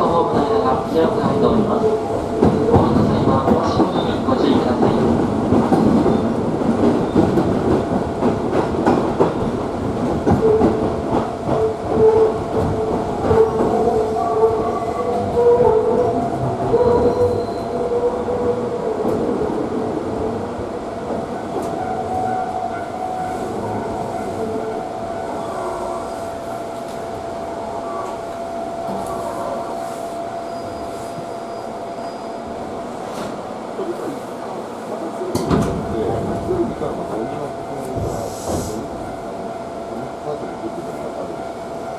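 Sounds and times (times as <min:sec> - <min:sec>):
train wheels squealing: 0:16.8 - 0:17.8, 0:30.4 - 0:32.5.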